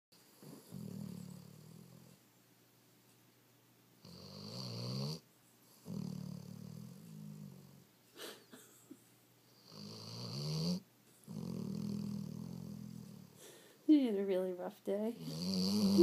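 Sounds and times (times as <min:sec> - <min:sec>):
dog snoring: 0:00.4 - 0:02.2, 0:04.0 - 0:07.9, 0:09.6 - 0:13.4, 0:15.2 - 0:16.0.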